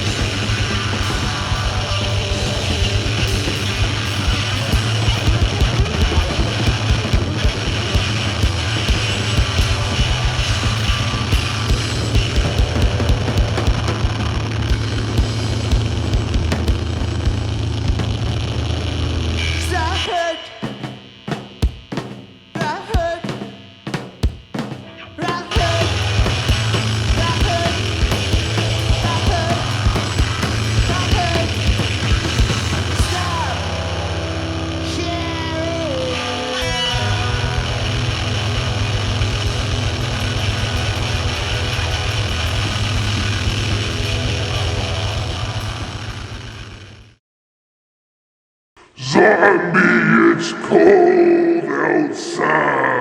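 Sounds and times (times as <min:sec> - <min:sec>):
engine idling: 0:00.0 - 0:19.4, 0:25.6 - 0:35.8, 0:36.7 - 0:46.6
live rock band playing: 0:00.0 - 0:20.0, 0:20.7 - 0:46.5
drum hits: 0:20.6 - 0:24.9.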